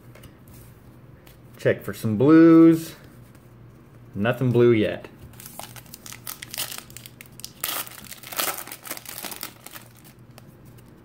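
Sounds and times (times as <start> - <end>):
wrapper being torn and crinkled: 5.4 - 10.4.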